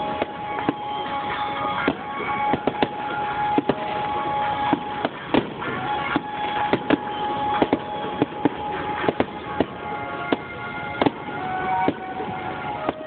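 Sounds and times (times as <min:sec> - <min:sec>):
firework shells bursting: 0:00.0 - 0:13.0
music with sustained tones: 0:00.0 - 0:13.0.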